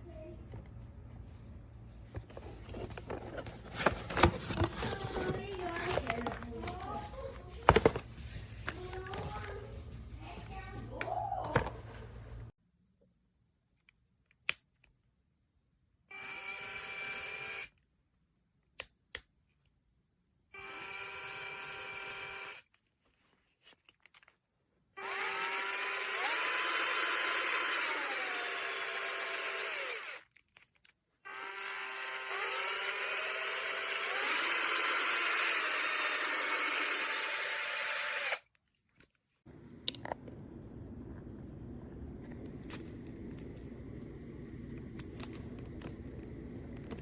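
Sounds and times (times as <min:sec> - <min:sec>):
cordless drill motor whining: 0:16.1 - 0:17.7, 0:20.6 - 0:22.6, 0:25.0 - 0:30.2, 0:31.3 - 0:38.4.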